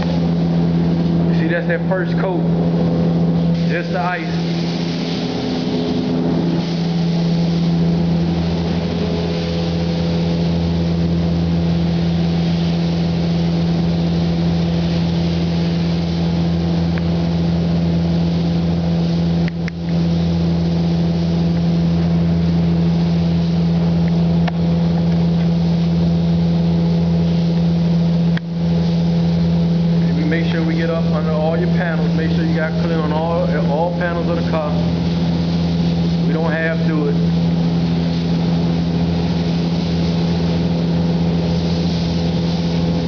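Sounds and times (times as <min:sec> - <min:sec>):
paint booth fans humming: 0:00.0 - 0:43.0
spray gun hissing: 0:00.0 - 0:43.0.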